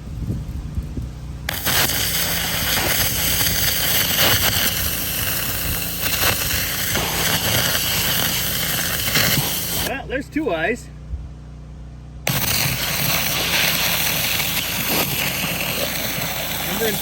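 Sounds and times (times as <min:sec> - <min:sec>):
engine running under load: 0:00.0 - 0:17.0
pressure washer jet hissing: 0:01.5 - 0:10.2, 0:12.3 - 0:17.0.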